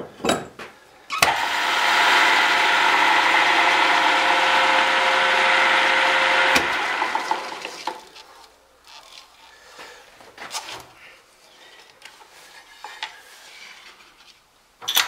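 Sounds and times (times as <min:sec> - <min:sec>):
lathe motor humming: 0:01.2 - 0:07.9.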